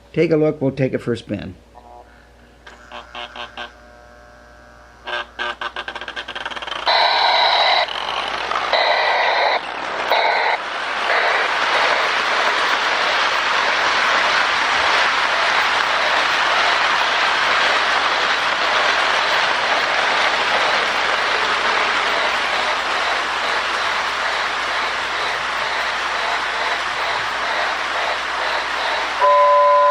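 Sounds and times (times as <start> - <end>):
model train running hiss: 5.0 - 29.9.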